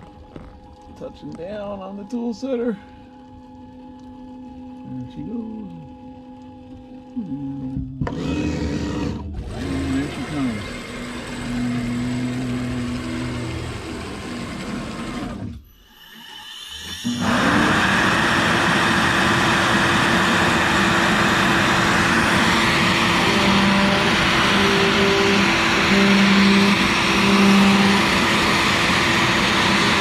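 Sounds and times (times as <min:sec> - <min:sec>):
stepper motors whining: 0:07.1 - 0:30.0
router spindle spinning: 0:08.0 - 0:15.6, 0:17.0 - 0:30.0.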